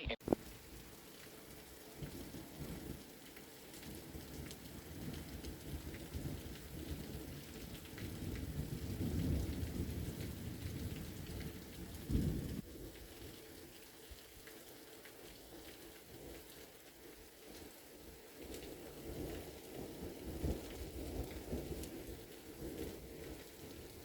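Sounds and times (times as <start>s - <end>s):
steady rain falling: 0.0s - 24.0s
thunder rumbling: 8.4s - 12.6s.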